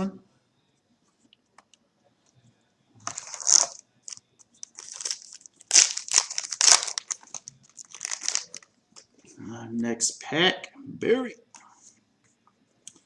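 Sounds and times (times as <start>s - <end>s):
foil wrapper crinkling: 3.0s - 9.1s.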